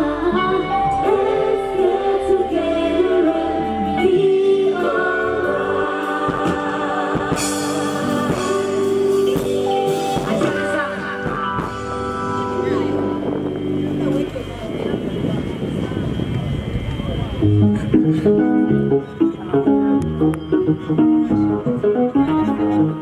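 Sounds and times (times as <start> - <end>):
person singing: 0.0 - 12.9
instrumental backing music: 0.0 - 15.0, 17.4 - 23.0.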